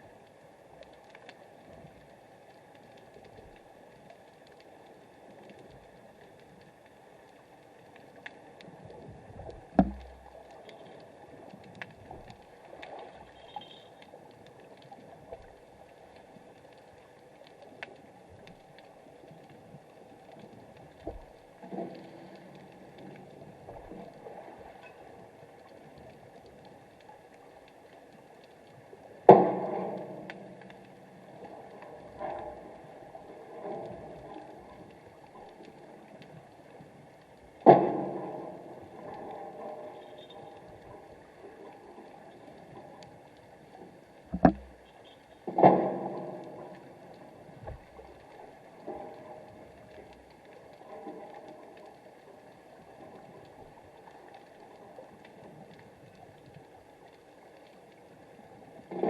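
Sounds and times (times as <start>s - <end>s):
sharp clicks and crackles: 0.1s - 32.9s, 33.6s - 58.2s
loud knock: 9.8s - 10.2s.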